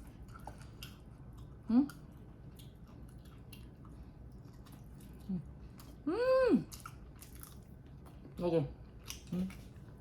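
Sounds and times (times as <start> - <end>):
chewing: 0.0 - 10.0
woman humming: 5.3 - 6.7.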